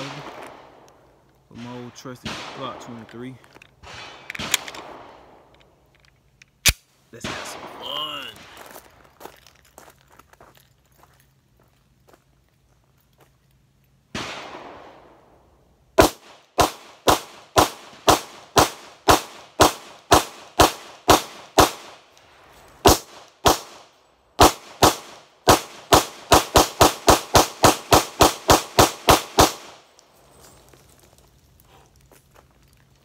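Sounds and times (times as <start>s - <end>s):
pistol rapid fire shots: 16.0s - 22.0s, 22.8s - 29.8s.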